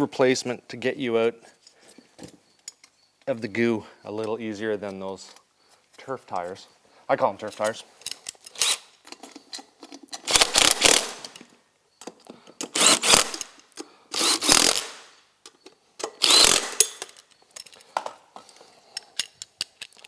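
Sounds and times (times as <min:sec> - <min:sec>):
power tool bursts: 0:08.6 - 0:08.9, 0:10.3 - 0:11.4, 0:12.7 - 0:13.6, 0:14.2 - 0:15.2, 0:16.1 - 0:17.1.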